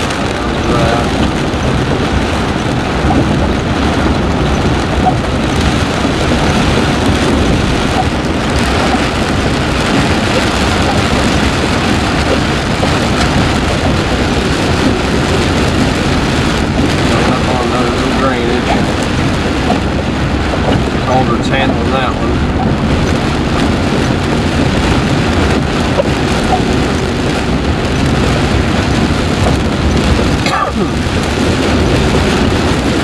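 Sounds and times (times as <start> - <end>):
heavy rain: 0.0 - 33.0.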